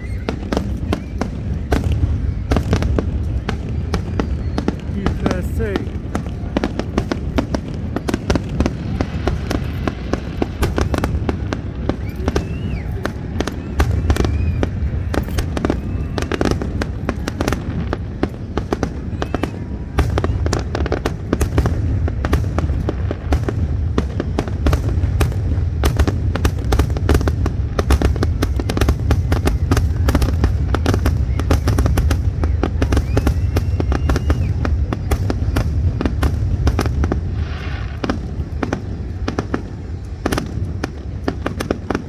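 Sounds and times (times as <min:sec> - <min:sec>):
firework bursts and crackles: 0:00.0 - 0:42.0.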